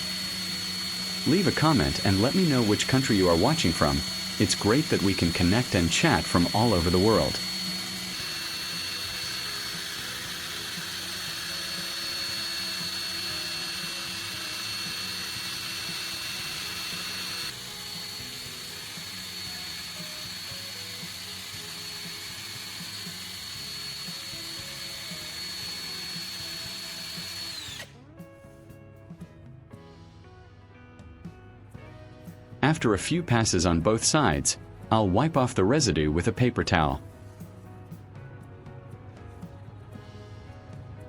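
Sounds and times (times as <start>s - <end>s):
soft background music: 0.0s - 8.2s, 8.8s - 41.0s
drill whine with grinding hiss: 0.0s - 28.0s.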